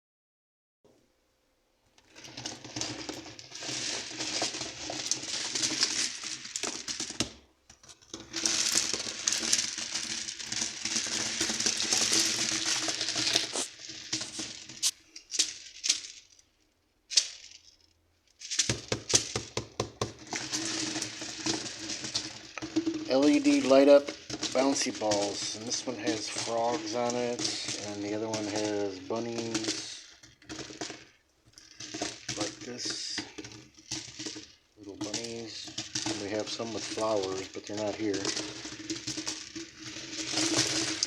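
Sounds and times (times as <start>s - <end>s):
plastic crinkling and rattling: 2.0s - 41.0s.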